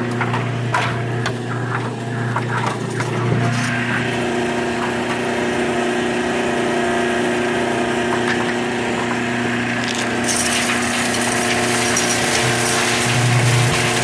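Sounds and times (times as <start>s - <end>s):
motor humming: 0.0s - 14.0s
wood chips rattling: 8.1s - 13.1s.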